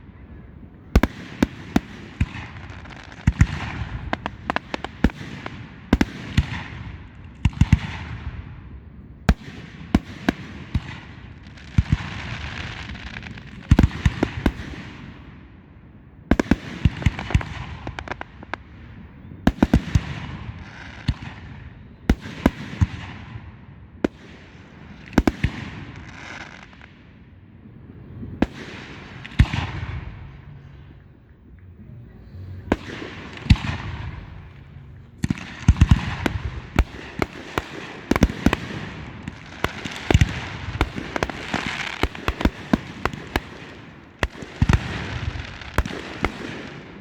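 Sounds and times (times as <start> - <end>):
fireworks banging: 0.8 - 8.4, 9.3 - 15.3, 28.1 - 47.0
crackling hiss: 28.2 - 47.0.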